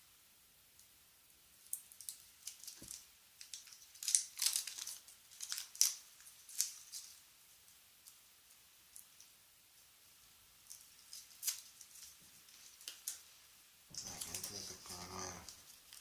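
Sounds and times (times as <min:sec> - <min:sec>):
plastic parts crinkling and clicking: 0:01.9 - 0:07.1.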